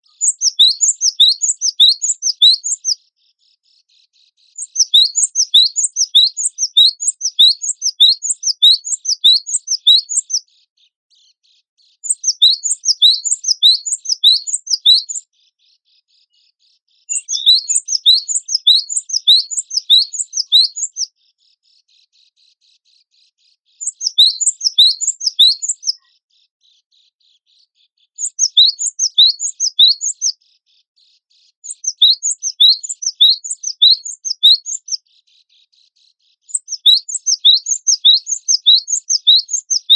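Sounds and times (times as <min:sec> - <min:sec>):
bird singing high repeated notes: 0:00.0 - 0:03.0, 0:04.6 - 0:10.4, 0:12.1 - 0:15.2, 0:17.1 - 0:21.1, 0:23.8 - 0:26.0, 0:28.2 - 0:30.4, 0:31.7 - 0:35.0, 0:36.5 - 0:39.9.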